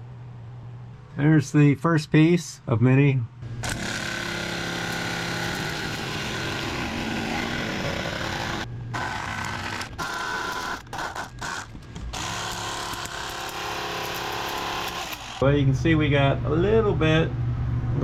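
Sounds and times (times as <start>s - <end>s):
mechanical running noise: 3.4s - 15.4s.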